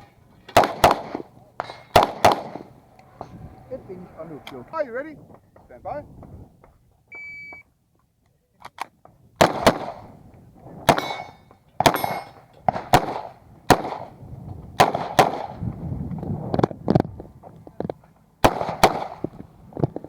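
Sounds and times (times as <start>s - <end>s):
pistol shots: 0.5s - 2.8s, 9.4s - 10.1s, 10.9s - 14.2s, 14.8s - 15.6s, 18.4s - 19.3s
shot timer beep: 7.1s - 7.6s
metallic ringing: 11.0s - 12.4s.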